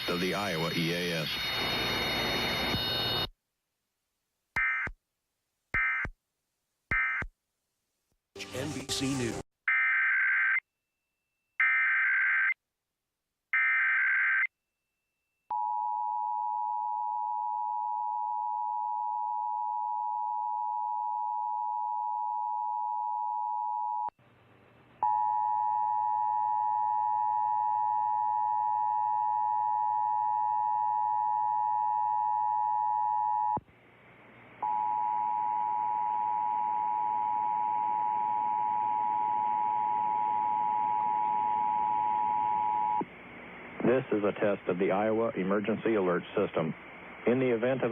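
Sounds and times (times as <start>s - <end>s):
screechy digital header tones: 0.0s - 3.3s.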